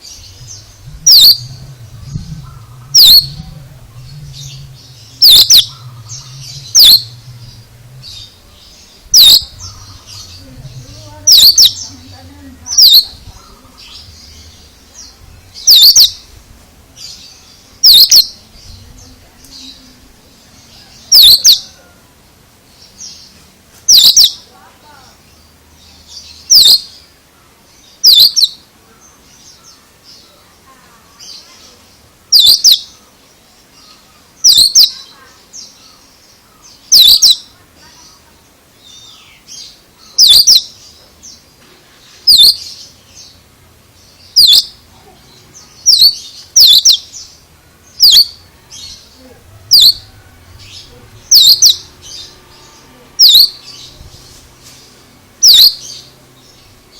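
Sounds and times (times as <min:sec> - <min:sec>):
faint bird chirps: 0:00.0 - 0:16.4, 0:17.0 - 0:22.0, 0:22.7 - 0:43.4, 0:44.0 - 0:56.9
bird sharp sweeping double note: 0:00.2 - 0:12.0
bird whistled call: 0:01.0 - 0:03.5, 0:04.2 - 0:08.3, 0:17.8 - 0:18.3, 0:45.9 - 0:47.0, 0:51.3 - 0:51.8.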